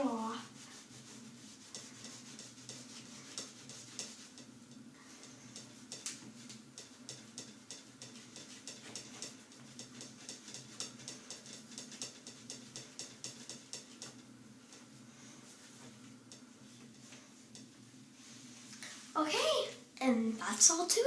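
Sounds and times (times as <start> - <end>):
towel rubbing phone case: 0.5 - 4.4.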